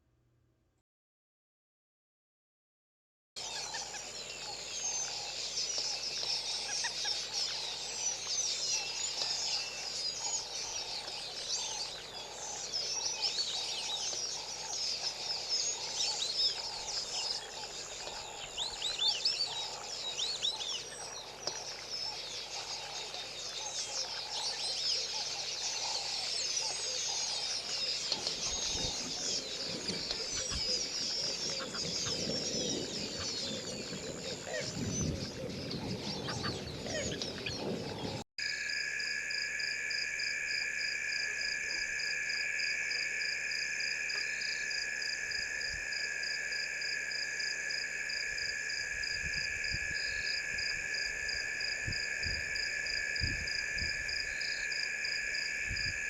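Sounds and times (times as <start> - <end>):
birds chirping: 3.4 - 38.2
high insect whine: 3.4 - 56.0
insects calling: 3.4 - 56.0.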